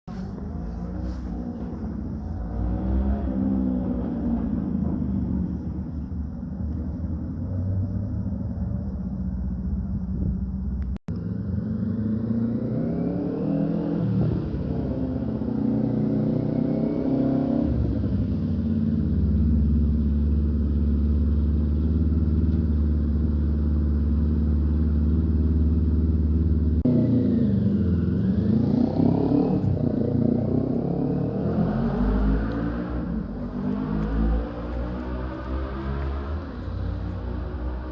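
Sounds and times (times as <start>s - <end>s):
car engine revving: 0.1s - 6.1s, 11.1s - 18.4s, 23.8s - 37.9s.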